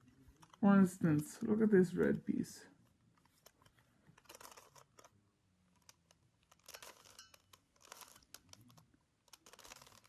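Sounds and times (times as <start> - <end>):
puzzle cube plastic clicking: 0.0 - 0.6, 2.7 - 10.0.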